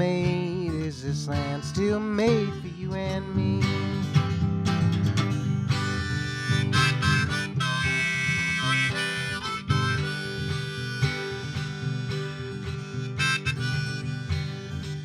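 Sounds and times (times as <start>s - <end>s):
strummed acoustic guitar: 0.0s - 15.0s
harmonica playing a melody: 5.7s - 15.0s.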